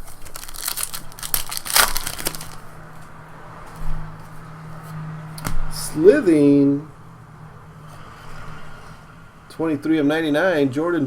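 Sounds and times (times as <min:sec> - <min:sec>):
wrapper crinkling: 0:00.0 - 0:02.7.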